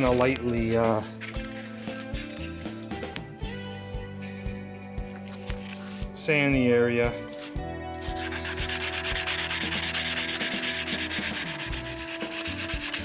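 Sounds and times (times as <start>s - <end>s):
sandpaper rubbing on metal: 0.0s - 3.1s, 7.3s - 13.0s.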